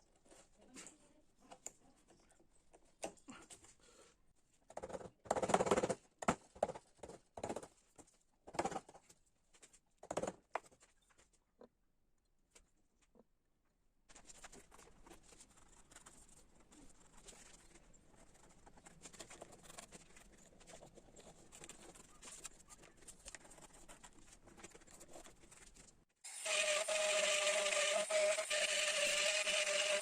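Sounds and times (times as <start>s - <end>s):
rotary carving tool whine: 26.2s - 30.0s
hand tool scratching wood: 26.3s - 30.0s.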